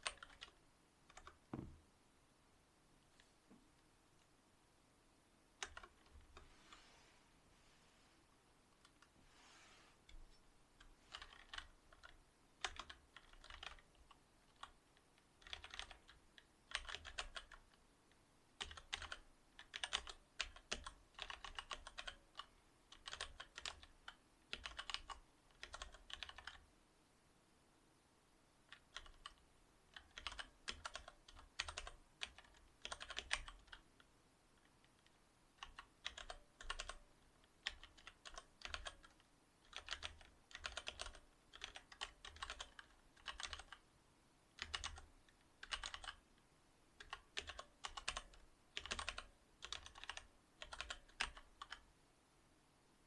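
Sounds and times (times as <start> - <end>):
mechanical keyboard typing: 0.0 - 1.4, 5.6 - 6.4, 10.8 - 17.8, 18.6 - 26.6, 28.7 - 43.8, 44.6 - 46.2, 47.0 - 51.8.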